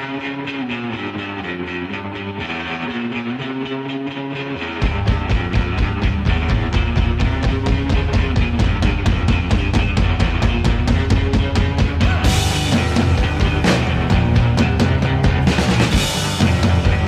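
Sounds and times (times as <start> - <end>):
rock band playing: 0.0 - 17.0
fast steady drum beat: 4.8 - 17.0.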